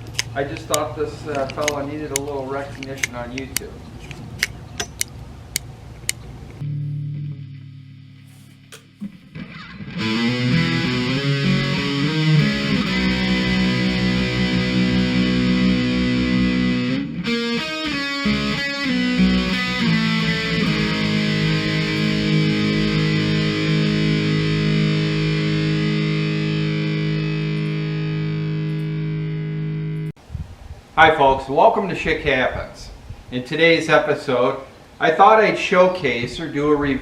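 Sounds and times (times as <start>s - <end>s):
distorted electric guitar chords: 6.6s - 30.2s.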